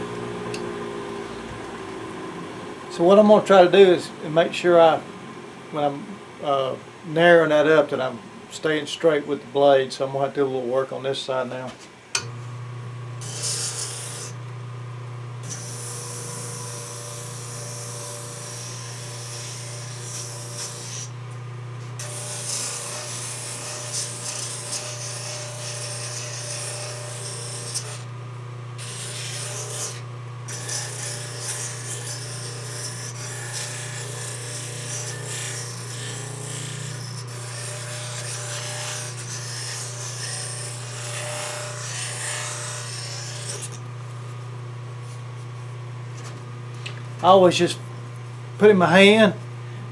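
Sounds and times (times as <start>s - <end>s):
sander motor hum: 0.0s - 3.3s.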